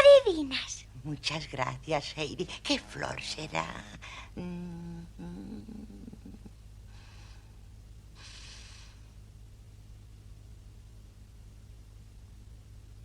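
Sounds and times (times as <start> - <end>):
elderly woman humming: 2.6 - 6.6.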